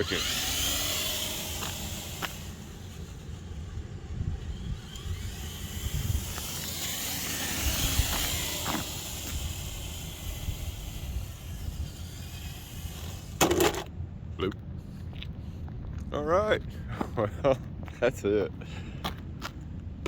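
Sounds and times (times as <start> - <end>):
electric motor and gears running: 0.0 - 13.9.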